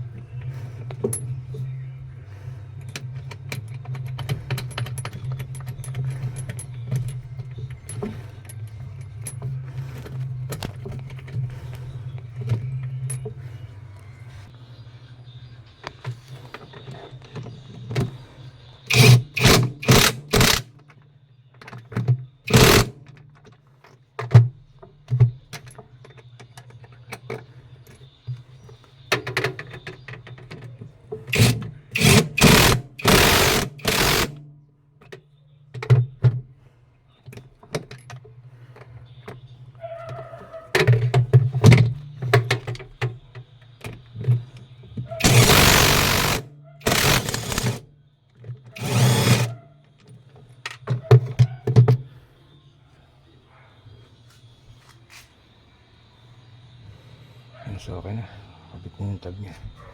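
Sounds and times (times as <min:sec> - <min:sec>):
tools knocking and clattering: 0:02.9 - 0:11.5, 0:29.1 - 0:34.4, 0:45.2 - 0:47.8.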